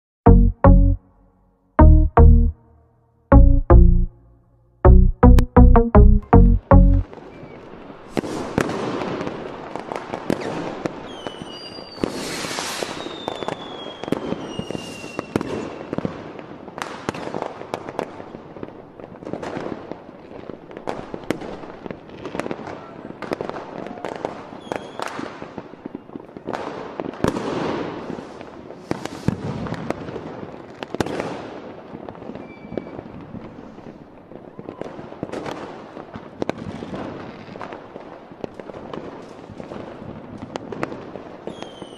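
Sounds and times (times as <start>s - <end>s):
firework bangs: 8.0s - 18.3s, 20.7s - 34.0s
whistling rockets: 10.2s - 16.1s, 23.9s - 25.3s, 27.4s - 29.9s, 32.3s - 33.2s, 41.5s - 41.9s.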